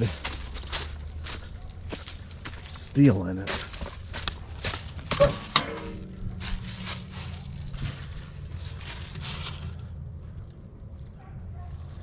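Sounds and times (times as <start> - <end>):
footsteps crunching on gravel: 0.0 - 9.8
low engine hum: 3.7 - 12.0.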